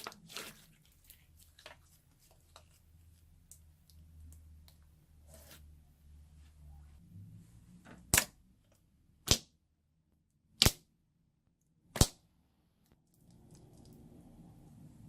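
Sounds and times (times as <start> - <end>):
slime crackling and squishing: 0.0 - 3.7.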